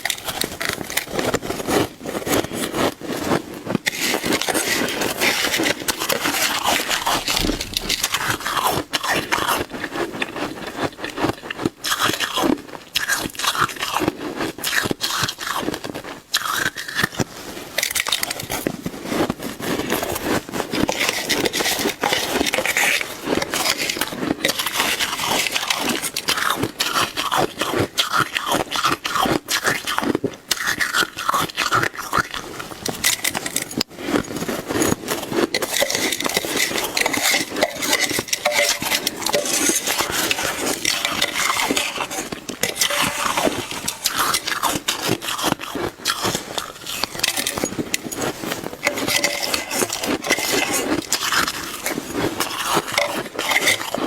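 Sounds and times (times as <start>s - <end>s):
ice being chewed: 0.0s - 54.0s.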